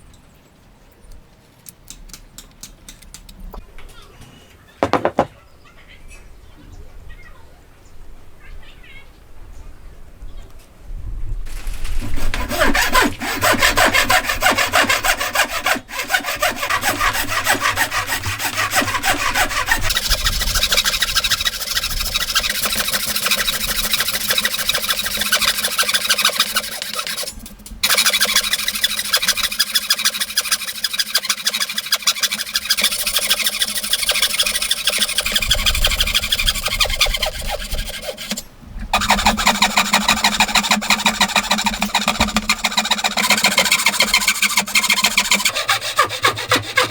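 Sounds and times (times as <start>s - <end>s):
hand saw cutting wood: 11.5s - 46.9s.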